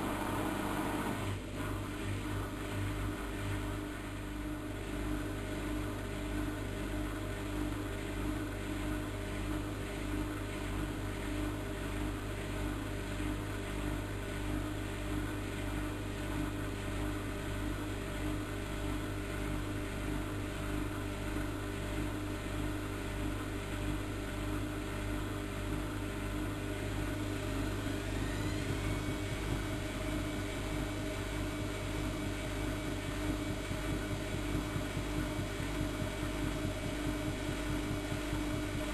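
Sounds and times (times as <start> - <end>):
rising motor whine: 0.0 - 1.4, 27.1 - 37.3
washing machine motor and drum: 0.0 - 38.9.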